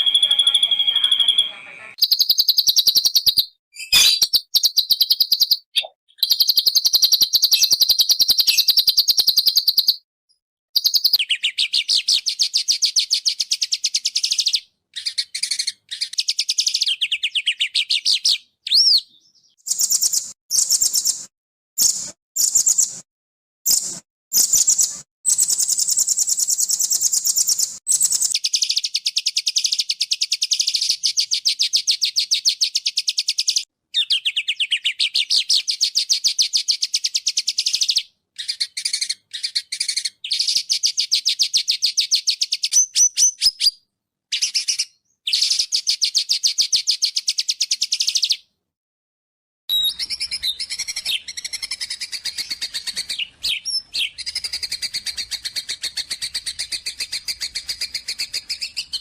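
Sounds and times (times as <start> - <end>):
songbird trilling: 0.0 - 10.0, 49.7 - 55.5.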